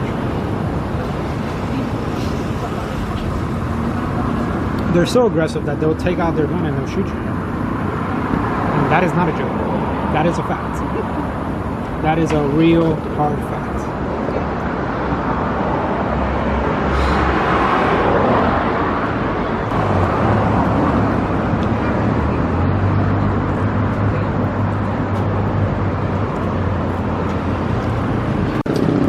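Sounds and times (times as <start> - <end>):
cars passing close by: 0.0 - 29.0
engine low hum: 19.0 - 29.0.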